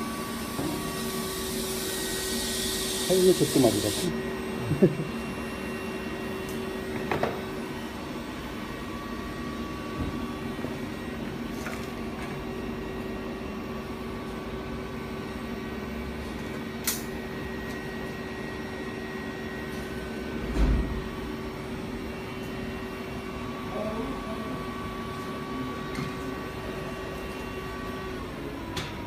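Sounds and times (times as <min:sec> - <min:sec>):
machine hum: 0:00.0 - 0:11.1.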